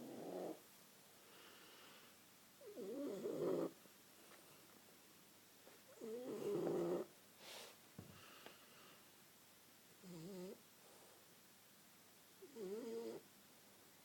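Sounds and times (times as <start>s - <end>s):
dog snoring: 0.0s - 0.6s, 2.6s - 3.8s, 5.9s - 7.1s, 10.0s - 10.6s, 12.4s - 13.2s.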